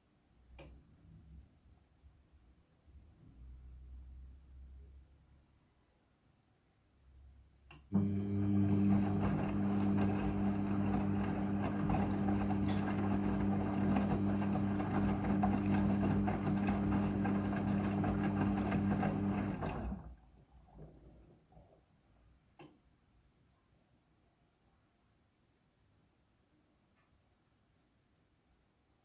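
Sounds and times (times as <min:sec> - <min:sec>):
washing machine electric hum: 0:07.9 - 0:21.8.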